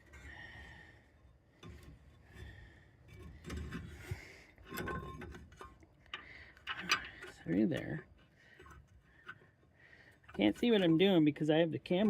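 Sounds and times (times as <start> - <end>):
faint metallic clicks and taps: 4.6 - 11.0.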